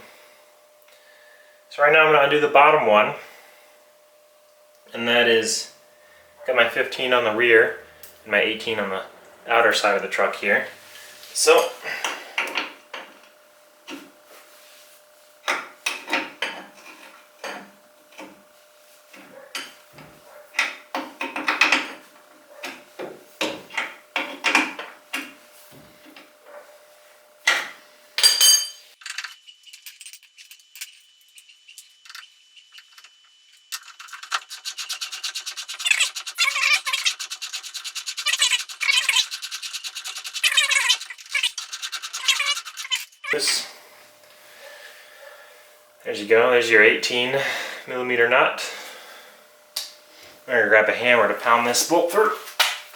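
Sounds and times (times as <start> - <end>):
ringing metal clink: 28.2 - 28.9
wrench clicking and scraping metal: 33.7 - 43.2
fast even ratchet clicking: 33.8 - 43.2.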